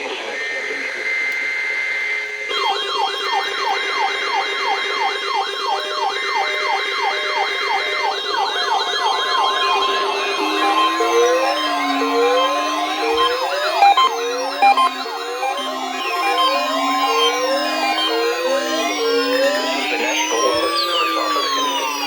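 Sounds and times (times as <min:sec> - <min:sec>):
alarm with falling sweeps: 0:02.5 - 0:22.0
weather alert radio alarms: 0:06.9 - 0:22.0
warbling siren-like sweeps: 0:08.4 - 0:22.0
steady beeps: 0:08.6 - 0:22.0
steady high tone: 0:09.0 - 0:22.0.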